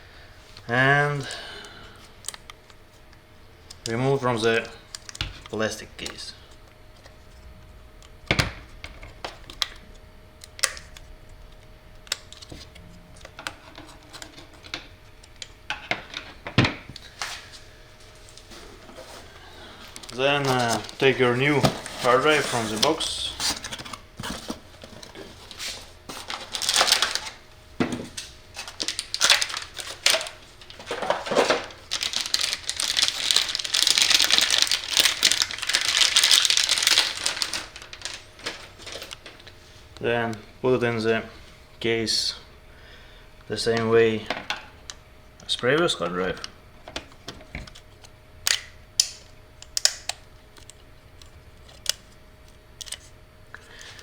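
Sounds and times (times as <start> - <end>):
box and packaging handled: 10.6 - 39.6, 46.2 - 54.0
plastic crinkling: 16.9 - 27.5, 28.1 - 39.9.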